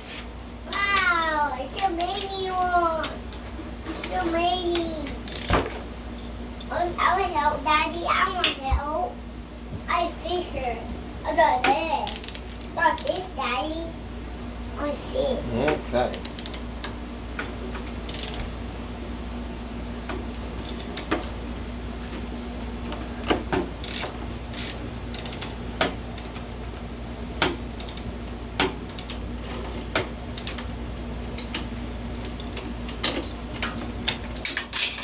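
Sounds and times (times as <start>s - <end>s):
steady low hum: 0.0s - 35.0s
ratchet wrench clicking: 5.3s - 5.5s, 12.1s - 12.4s, 13.0s - 13.2s, 16.1s - 17.0s, 18.1s - 18.4s, 23.8s - 26.5s.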